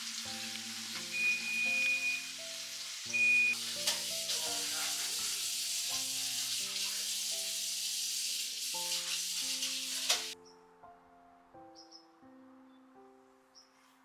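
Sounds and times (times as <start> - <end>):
food sizzling in a frying pan: 0.0 - 10.4
soft background music: 0.0 - 14.0.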